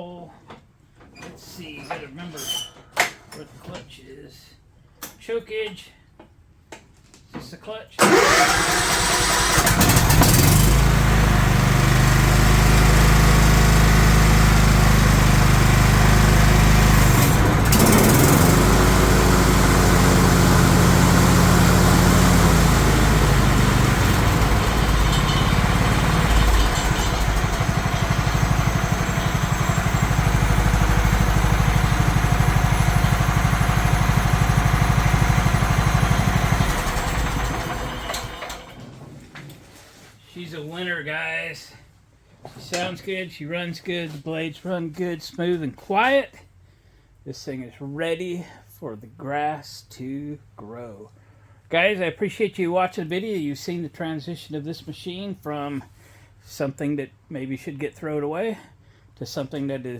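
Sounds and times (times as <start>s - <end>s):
lawn tractor engine running: 8.0s - 39.0s.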